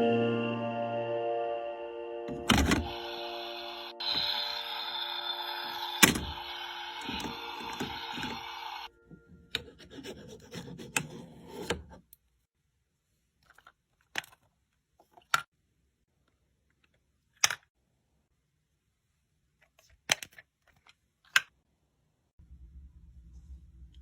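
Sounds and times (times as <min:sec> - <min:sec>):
background music: 0:00.0 - 0:06.4
scraping and rubbing: 0:09.6 - 0:12.1.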